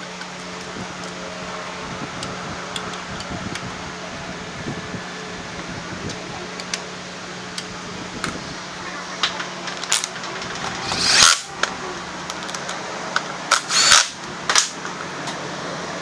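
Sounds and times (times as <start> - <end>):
power tool running: 9.6 - 12.7, 13.4 - 14.8.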